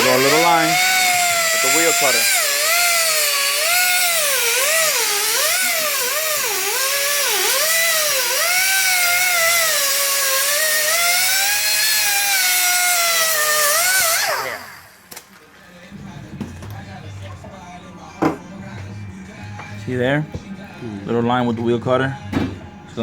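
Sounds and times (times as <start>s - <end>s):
cut-off wheel grinding steel: 0.0s - 15.0s.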